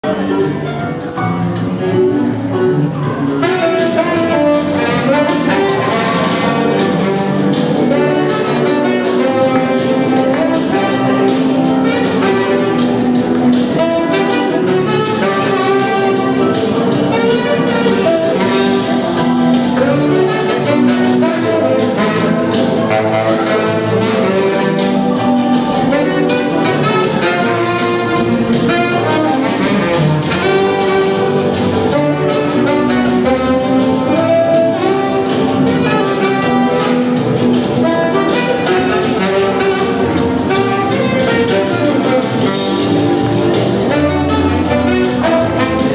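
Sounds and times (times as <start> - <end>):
jazz blues band accompaniment: 0.0 - 45.9
saxophone melody: 0.0 - 45.9.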